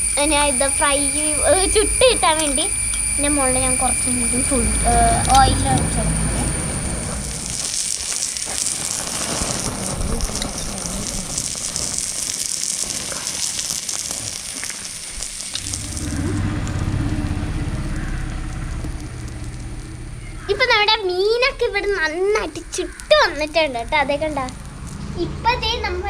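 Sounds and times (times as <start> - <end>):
low rumble: 0.0 - 7.8, 15.6 - 22.8
fish sizzling in oil: 0.0 - 25.1.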